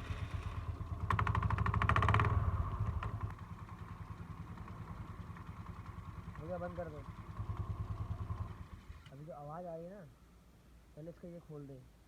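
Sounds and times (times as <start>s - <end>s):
scooter engine revving and idling: 0.0s - 9.1s.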